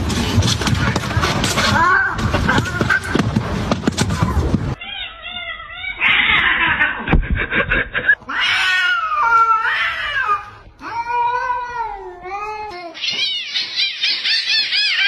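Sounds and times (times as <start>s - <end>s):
cat yowling: 4.8s - 7.1s, 8.2s - 15.0s.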